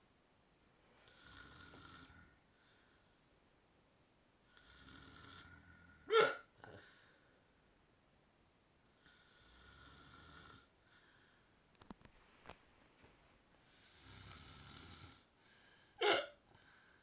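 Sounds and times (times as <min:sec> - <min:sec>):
man snoring: 0:01.1 - 0:02.4, 0:04.5 - 0:06.1, 0:09.0 - 0:10.7, 0:13.7 - 0:15.3
loud sharp hiccup: 0:06.1 - 0:06.5, 0:16.0 - 0:16.4.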